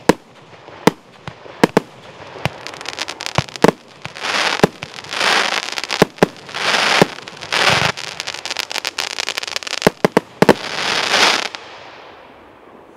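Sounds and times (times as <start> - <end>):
fireworks hissing bursts: 0.0 - 12.0.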